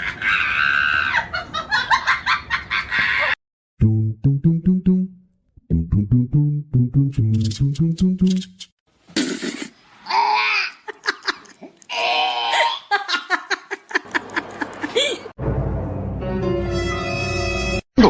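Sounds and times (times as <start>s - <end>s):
laughter: 1.0s - 3.4s, 10.8s - 11.6s, 12.9s - 15.3s.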